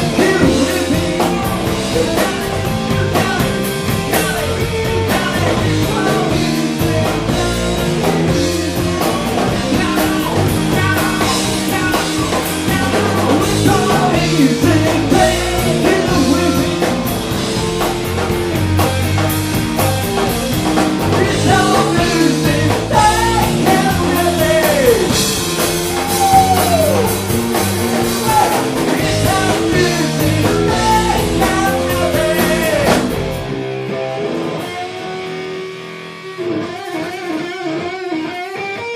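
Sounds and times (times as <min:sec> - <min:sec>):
electric guitar ringing: 0:00.0 - 0:02.8
rock band playing live: 0:00.0 - 0:38.9.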